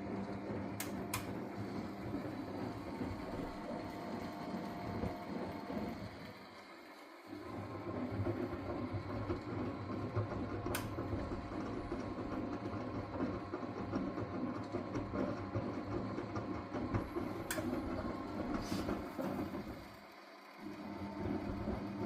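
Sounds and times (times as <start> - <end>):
washing machine drum rumbling: 7.4 - 19.9.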